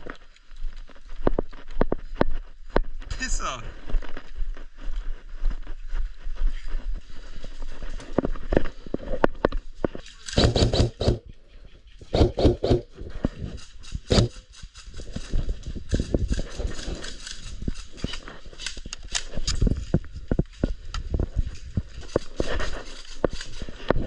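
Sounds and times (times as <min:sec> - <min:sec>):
footsteps on ground: 0:00.0 - 0:11.2, 0:12.2 - 0:24.0
gear scuffing and knocking: 0:12.2 - 0:18.4.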